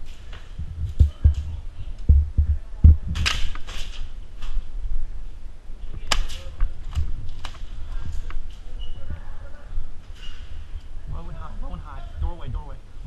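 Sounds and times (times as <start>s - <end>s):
sharp cracks: 3.1s - 4.6s.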